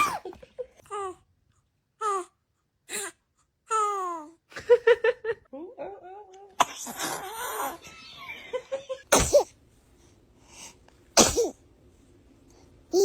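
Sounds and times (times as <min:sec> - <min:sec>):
baby sneezing: 0:00.0 - 0:00.3, 0:09.1 - 0:09.5, 0:11.2 - 0:11.6.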